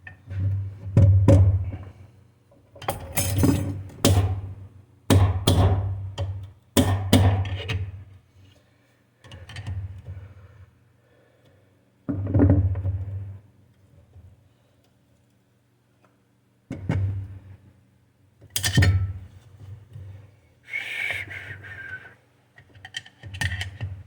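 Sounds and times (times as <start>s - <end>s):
metal parts knocking and clunking: 2.8s - 4.4s.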